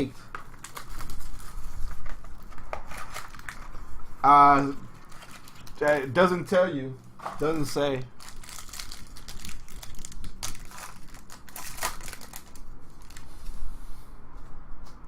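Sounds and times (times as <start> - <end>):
foil wrappers crinkling: 0.0 - 4.0, 4.8 - 6.3, 7.2 - 13.4
cards rustling and snapping: 0.3 - 3.7, 5.0 - 6.1, 7.2 - 13.3.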